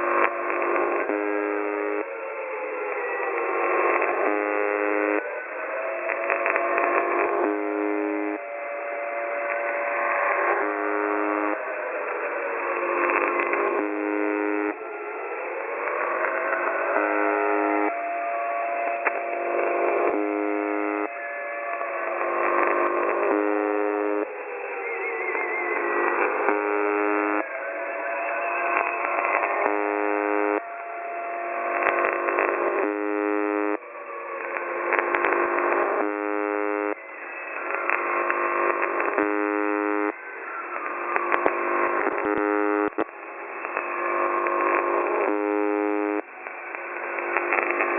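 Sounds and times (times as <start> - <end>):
radio static hiss: 0.0 - 2.1, 3.4 - 5.2, 6.1 - 8.4, 9.5 - 11.7, 12.6 - 14.8, 15.9 - 18.0, 19.1 - 21.1, 22.1 - 24.3, 25.1 - 27.4, 28.8 - 30.7, 31.7 - 33.8, 34.5 - 37.0, 37.6 - 47.9
harsh radio buzz tone: 0.0 - 2.2, 3.2 - 5.3, 6.2 - 8.4, 10.0 - 11.8, 12.6 - 14.9, 15.9 - 18.0, 19.4 - 21.3, 22.1 - 27.6, 28.7 - 30.6, 31.7 - 33.8, 34.5 - 43.1, 43.7 - 46.4.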